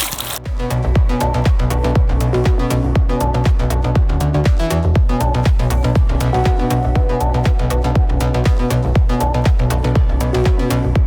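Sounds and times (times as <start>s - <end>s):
kick drum: 0.4s - 11.0s.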